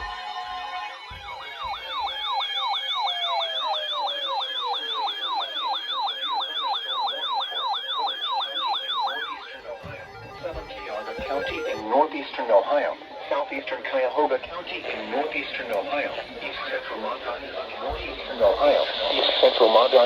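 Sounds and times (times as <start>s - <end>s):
electronic siren yelping: 0.0s - 13.6s.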